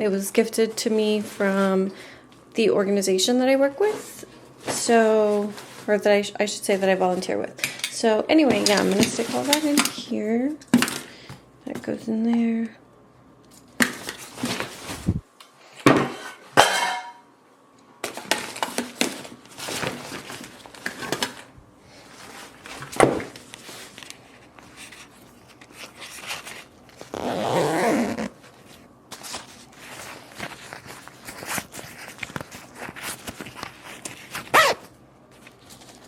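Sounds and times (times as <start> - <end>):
bag rustling: 24.7 - 36.0.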